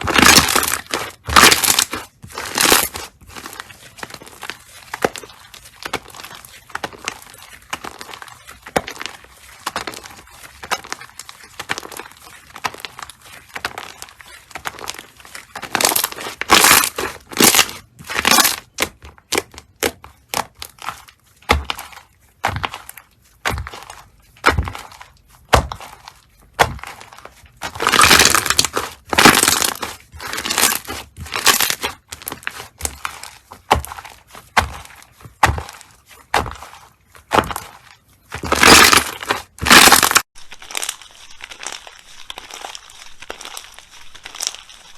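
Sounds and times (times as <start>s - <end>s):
slime crackling when squeezed: 0.0s - 19.9s, 26.6s - 35.0s, 37.4s - 44.9s.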